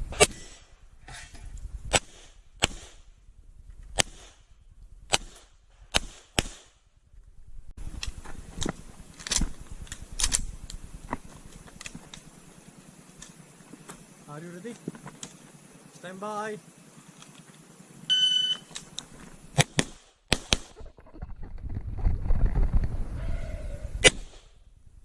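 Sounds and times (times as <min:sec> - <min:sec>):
hissy background: 0:00.0 - 0:21.0
faint gunshots: 0:01.9 - 0:03.1, 0:05.1 - 0:06.8, 0:19.6 - 0:20.8
pistol shots with echo: 0:05.1 - 0:06.8.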